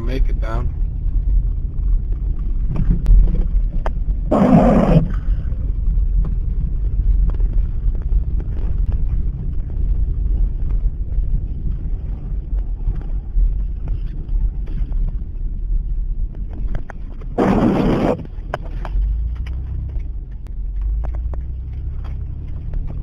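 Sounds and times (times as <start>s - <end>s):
car engine and tyres rumbling: 0.0s - 23.0s.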